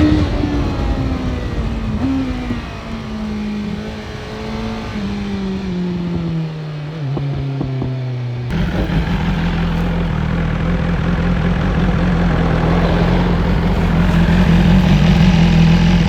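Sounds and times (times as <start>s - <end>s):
motorcycle engine: 0.0s - 16.0s.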